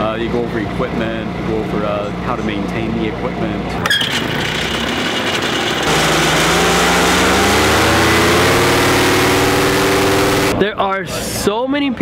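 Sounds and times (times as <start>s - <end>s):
paramotor engine running: 3.8s - 10.6s.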